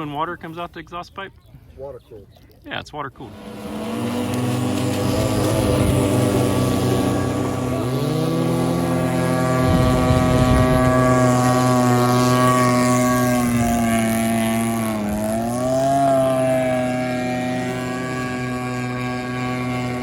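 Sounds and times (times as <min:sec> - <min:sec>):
rc boat engines buzzing: 0:03.1 - 0:20.0.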